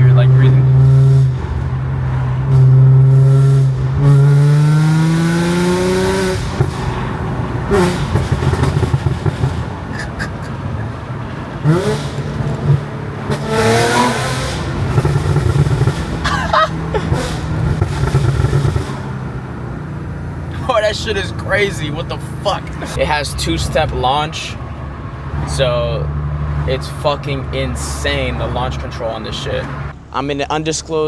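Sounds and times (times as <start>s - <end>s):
exhaust crackles and pops: 0.0s - 23.0s
car engine revving: 0.0s - 30.2s.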